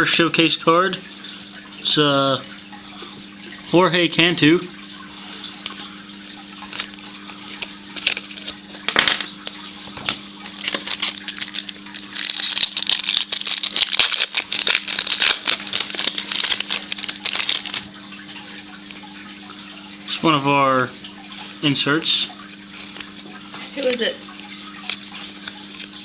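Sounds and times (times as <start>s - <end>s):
low electrical hum: 0.0s - 26.0s
wrapper crackling and tearing: 7.9s - 8.6s, 10.4s - 18.0s.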